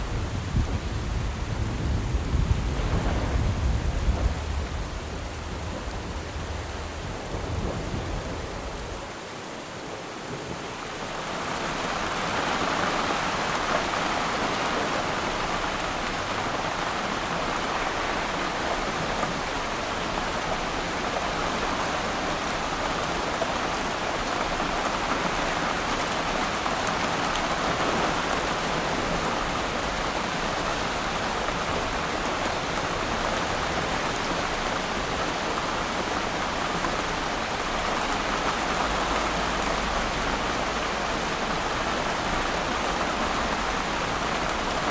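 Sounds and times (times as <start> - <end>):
rain falling on water: 0.0 - 44.9
low rumble: 0.2 - 9.0.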